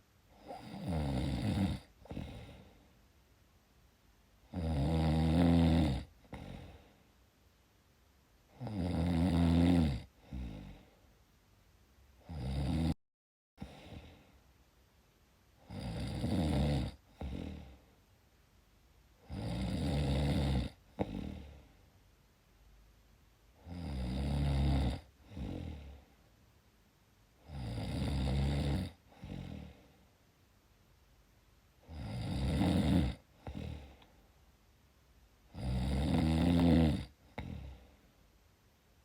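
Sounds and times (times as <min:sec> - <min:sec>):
low rattling snores: 0:00.4 - 0:02.7, 0:04.5 - 0:06.8, 0:08.5 - 0:10.9, 0:12.2 - 0:13.0, 0:15.6 - 0:17.8, 0:19.2 - 0:21.6, 0:23.6 - 0:26.0, 0:27.4 - 0:29.8, 0:31.8 - 0:34.0, 0:35.5 - 0:37.8
soft breath: 0:02.0 - 0:03.1, 0:06.2 - 0:07.2, 0:13.6 - 0:14.5, 0:29.0 - 0:30.2, 0:33.3 - 0:34.5, 0:37.2 - 0:38.2.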